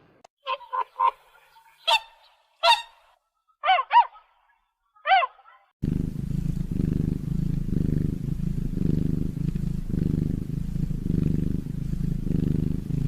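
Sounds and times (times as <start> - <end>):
goose honking: 0.5 - 3.0
cat purring: 5.8 - 13.0.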